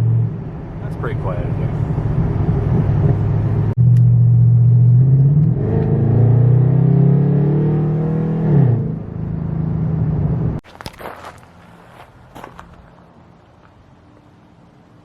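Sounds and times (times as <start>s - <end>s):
car engine accelerating: 0.0s - 10.6s.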